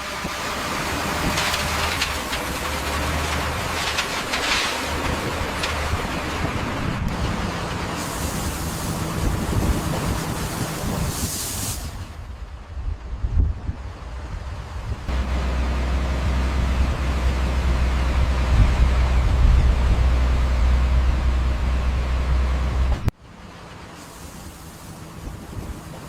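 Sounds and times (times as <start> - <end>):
heavy machinery engine hum: 0.0 - 26.0
short hissing bursts: 8.0 - 12.1.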